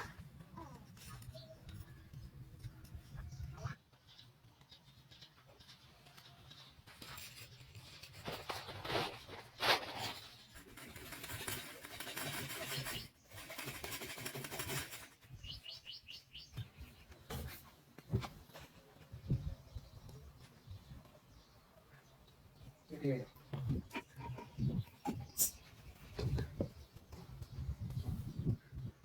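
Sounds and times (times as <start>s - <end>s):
bird chirping: 0.6s - 7.6s, 11.9s - 13.8s, 15.2s - 17.3s
scraping and rubbing: 6.9s - 15.3s.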